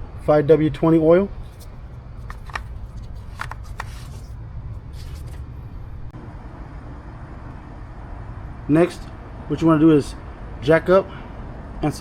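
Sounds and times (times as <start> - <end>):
steady low rumble: 0.0 - 12.0
light clicks and rustles: 1.4 - 4.4.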